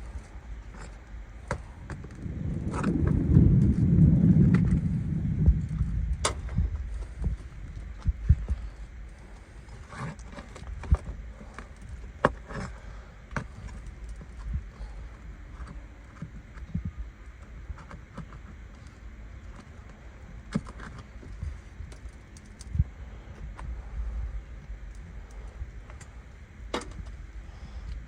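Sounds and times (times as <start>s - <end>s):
low rumble: 1.2s - 9.9s.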